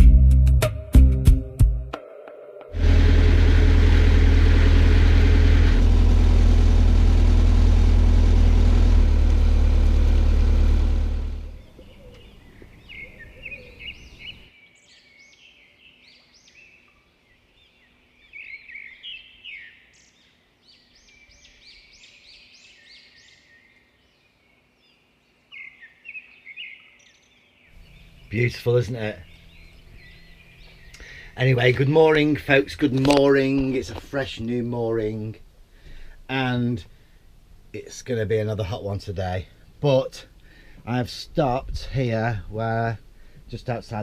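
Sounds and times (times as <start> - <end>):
loud low drone: 2.7 - 11.6
small birds chirping: 11.4 - 44.0.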